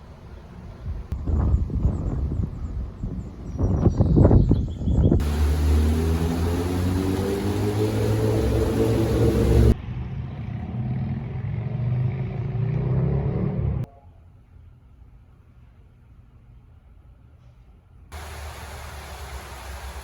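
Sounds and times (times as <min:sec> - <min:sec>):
vehicle engine accelerating: 0:05.2 - 0:13.9.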